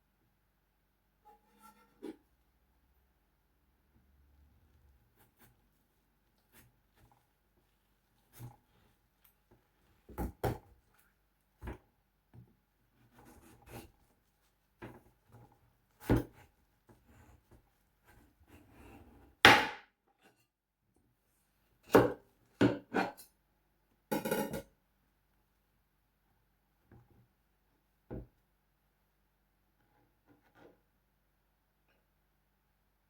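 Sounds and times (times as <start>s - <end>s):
knife cutting watermelon on board: 13.0s - 14.0s, 16.0s - 17.4s, 21.8s - 23.2s.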